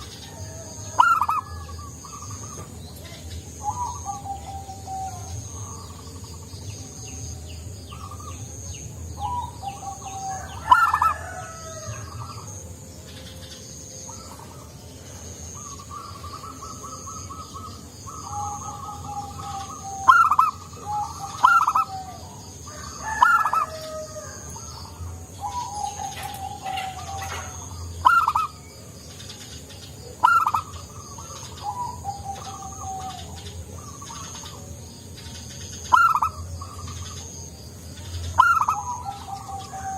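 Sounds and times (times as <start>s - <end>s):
doves cooing: 0.0s - 39.9s.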